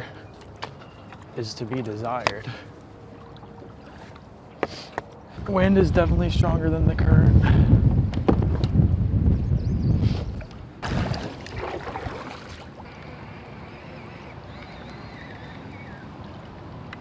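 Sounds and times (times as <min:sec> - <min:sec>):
wind buffeting microphone: 0:05.2 - 0:12.6
water splash: 0:10.8 - 0:12.8.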